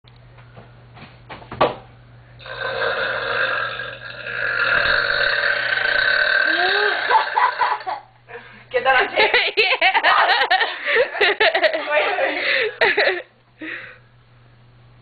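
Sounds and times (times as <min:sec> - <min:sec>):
long burp: 0:02.4 - 0:07.9.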